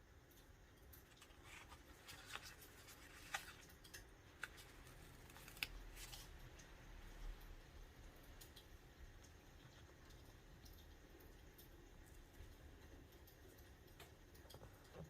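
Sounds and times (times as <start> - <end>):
paper rustling and scraping: 1.1 - 3.7, 4.4 - 6.3.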